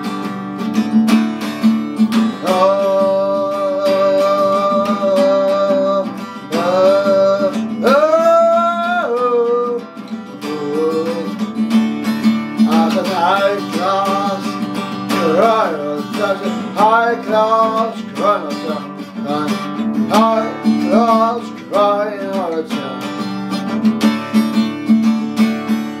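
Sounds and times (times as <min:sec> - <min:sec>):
acoustic guitar strumming: 0:00.0 - 0:26.0
man singing: 0:02.1 - 0:23.8.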